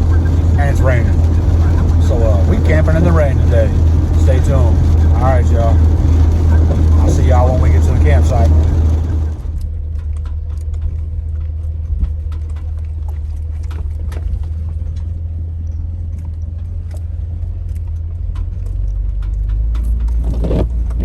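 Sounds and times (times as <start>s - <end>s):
engine and road drone: 0.0s - 21.0s
small clicks and taps: 8.7s - 21.0s.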